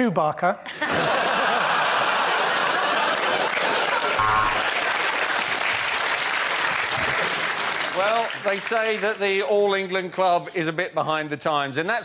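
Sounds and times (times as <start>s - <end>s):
audience laughing and applauding: 0.8s - 9.3s.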